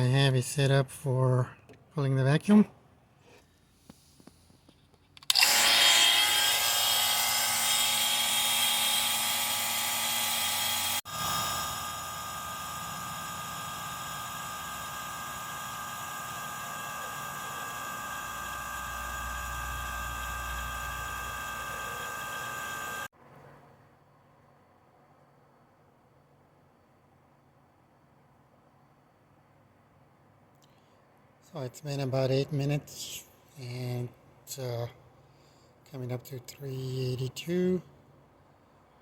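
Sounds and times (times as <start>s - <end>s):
vacuum pump motor whine: 5.3s - 23.1s.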